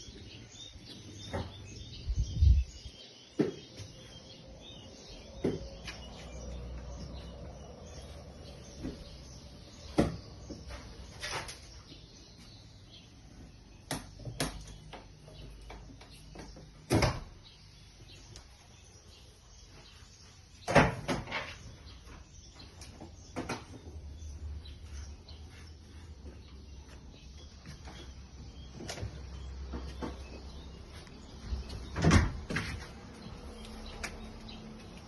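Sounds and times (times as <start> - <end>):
knocks and clunks: 31.4 - 34.2.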